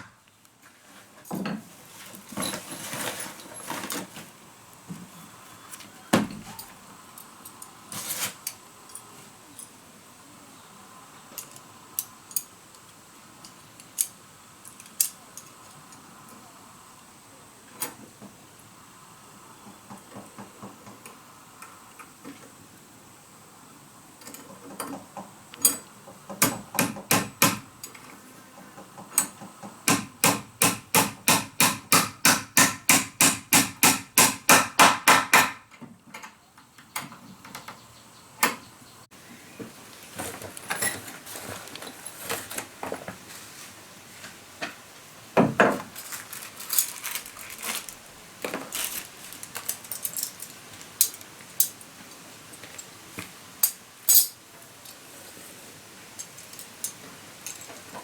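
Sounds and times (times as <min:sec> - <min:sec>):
hammer striking wood: 0:26.4 - 0:27.7, 0:29.9 - 0:35.7.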